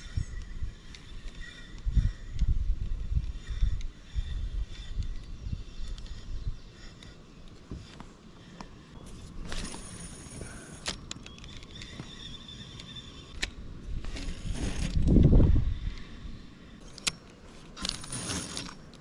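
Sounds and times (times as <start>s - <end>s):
fishing reel whirring: 8.4s - 11.0s, 17.8s - 19.0s
small handling clicks: 10.7s - 14.2s, 16.8s - 19.0s.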